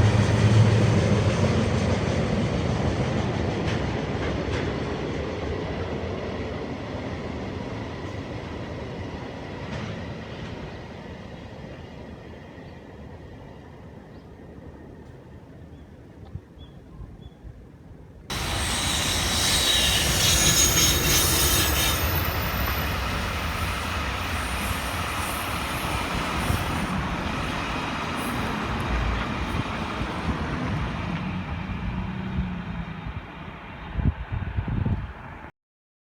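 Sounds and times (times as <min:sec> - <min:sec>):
freight train rumbling past: 0:00.0 - 0:15.0, 0:18.3 - 0:35.5
high squealing hiss: 0:18.3 - 0:28.8.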